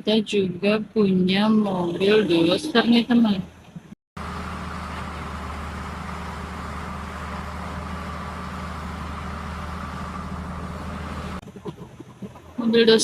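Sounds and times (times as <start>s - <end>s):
bulldozer engine running: 3.8s - 12.6s.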